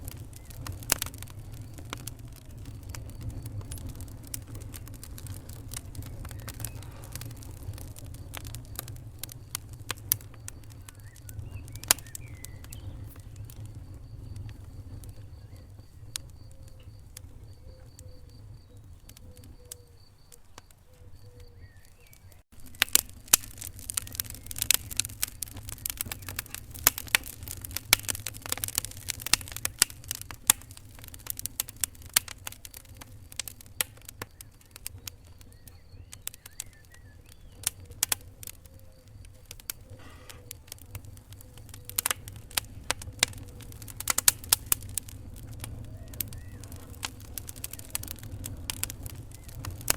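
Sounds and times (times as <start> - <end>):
low steady rumble: 0.0 - 19.0, 41.0 - 49.9
sharp pops of fire: 0.0 - 49.9
wood fire crackling: 0.0 - 49.9.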